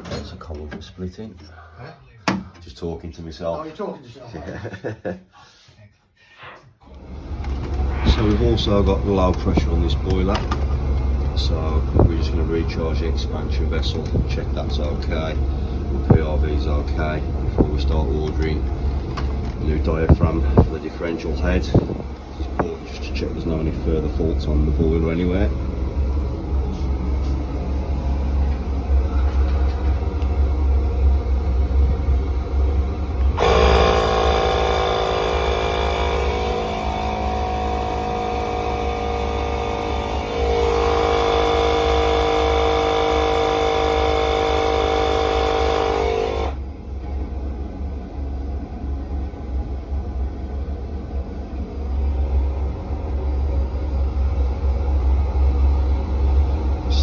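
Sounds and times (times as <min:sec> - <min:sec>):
low rumble: 0:06.9 - 0:24.8
electric air pump running: 0:06.9 - 0:47.8.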